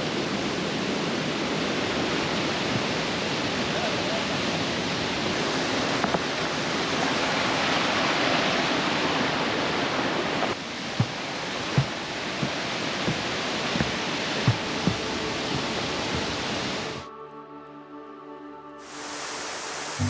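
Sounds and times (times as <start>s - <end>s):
river rushing over rocks: 0.0s - 17.1s
soft low thumps: 10.9s - 16.7s.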